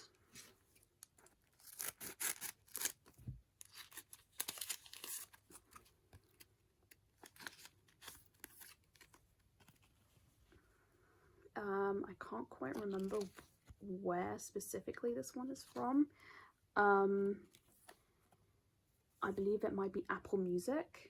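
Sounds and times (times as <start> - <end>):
card packaging tearing and rustling: 1.1 - 6.5, 7.2 - 9.8.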